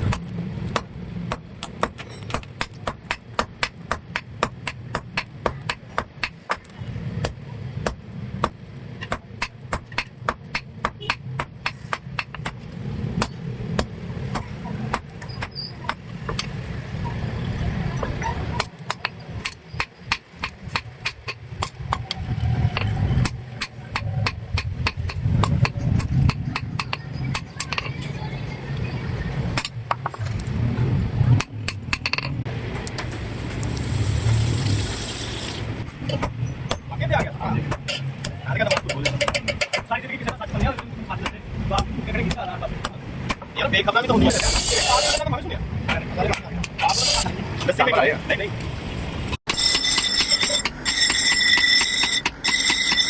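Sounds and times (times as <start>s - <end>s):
hammer striking iron: 0.0s - 16.5s, 22.8s - 27.9s, 49.5s - 53.0s.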